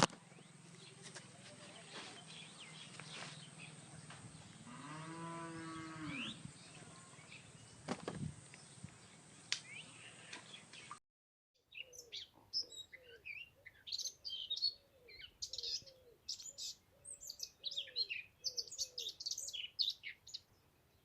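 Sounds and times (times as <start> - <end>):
cow mooing: 4.6 - 6.4.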